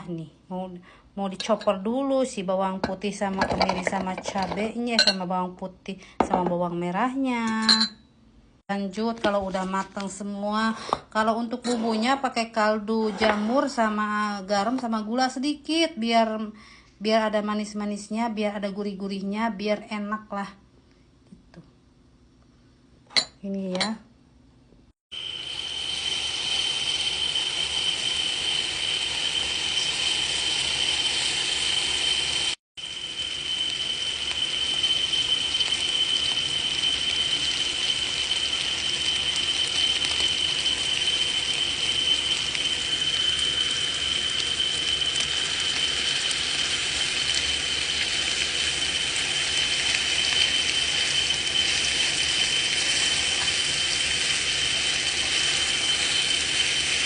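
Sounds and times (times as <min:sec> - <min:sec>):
food chopper motor whining: 0:25.2 - 0:57.0.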